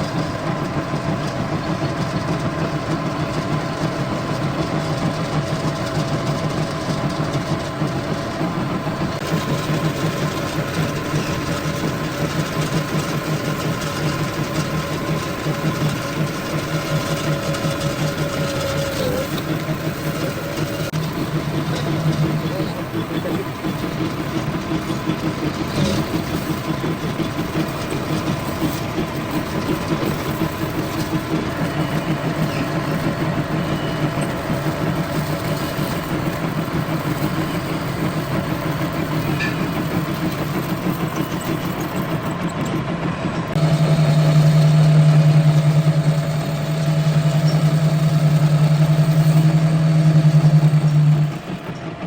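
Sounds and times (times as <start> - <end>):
lathe humming: 0.0 - 52.0.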